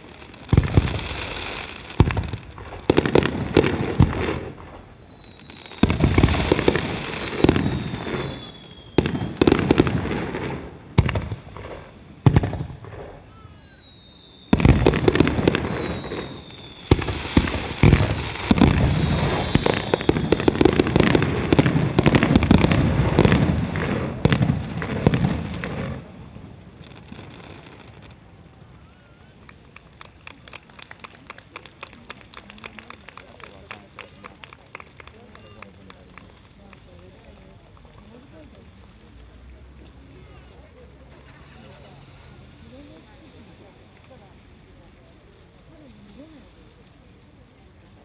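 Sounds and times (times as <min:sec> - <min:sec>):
fireworks bursting: 0:00.0 - 0:48.0
fireworks crackling: 0:00.0 - 0:48.0
falling whistles: 0:04.1 - 0:09.6, 0:11.7 - 0:21.5, 0:28.6 - 0:29.5.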